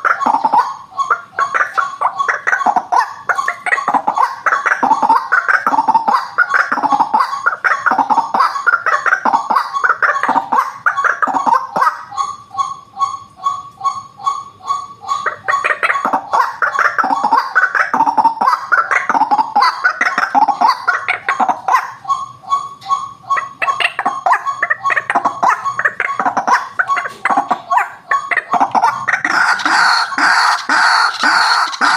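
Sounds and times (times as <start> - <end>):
bird repeated single notes: 0.0 - 31.9
waterhen harsh croaking: 28.1 - 31.9.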